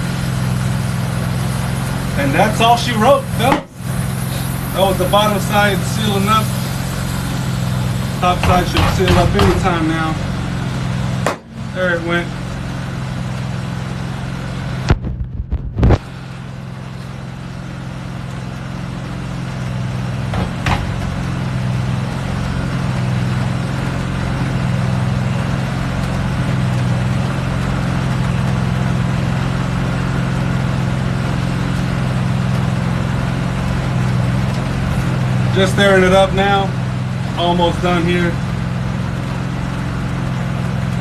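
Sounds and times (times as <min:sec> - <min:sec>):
air hissing into tire: 0:00.0 - 0:10.6
air compressor running: 0:00.0 - 0:41.0
sharp knocks: 0:08.3 - 0:09.9, 0:11.2 - 0:11.7, 0:20.3 - 0:21.0.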